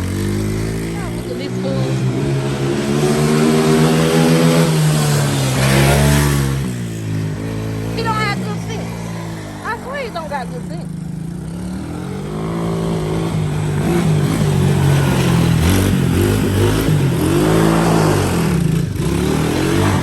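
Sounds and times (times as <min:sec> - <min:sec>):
atv engine revving: 0:00.0 - 0:20.0.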